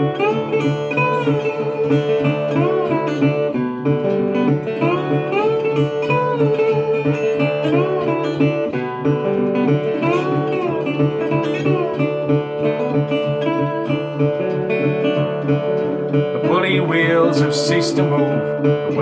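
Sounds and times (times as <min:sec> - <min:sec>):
acoustic guitar accompaniment: 0:00.0 - 0:19.0
sliding lead melody: 0:00.0 - 0:19.0.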